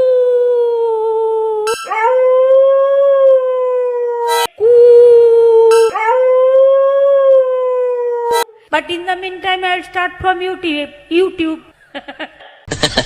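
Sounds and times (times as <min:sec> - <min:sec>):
dog howling: 0:00.0 - 0:08.5.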